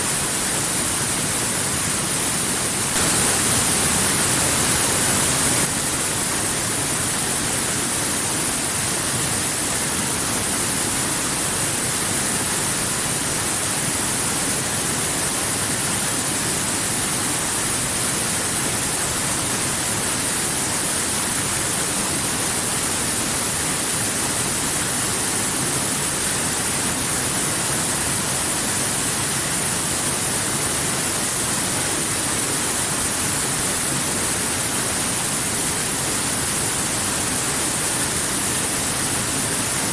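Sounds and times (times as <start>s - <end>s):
waterfall rushing: 0.0s - 9.7s, 18.4s - 39.9s.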